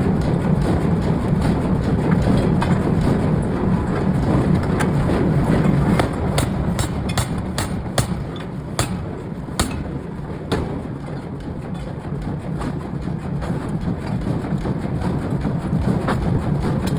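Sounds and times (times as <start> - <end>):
low rumble of shop machinery: 0.0 - 16.9
air hammer striking hot steel: 5.9 - 10.9.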